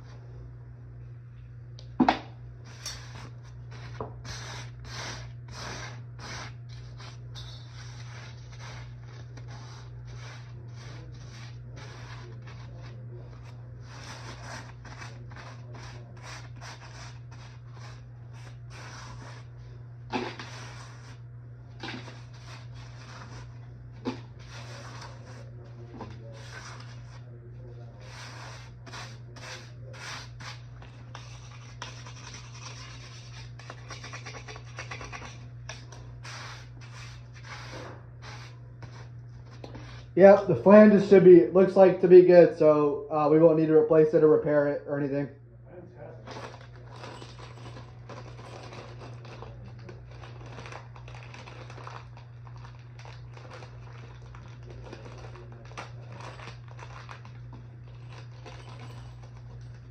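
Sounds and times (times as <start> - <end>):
steady low hum: 0.0 - 59.9
rubbing and scraping strokes: 2.7 - 19.5, 21.8 - 27.2, 28.0 - 40.1.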